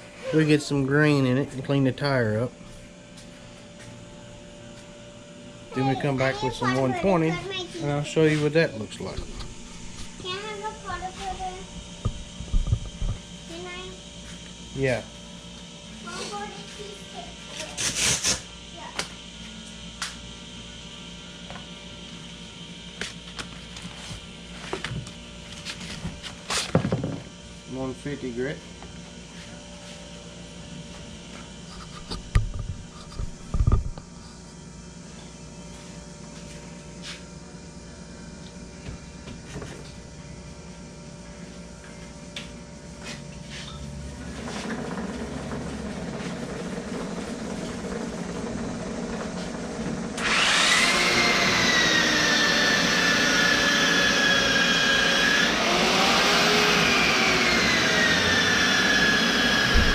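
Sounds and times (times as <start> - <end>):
angle grinder whining: 43.7 - 59.9.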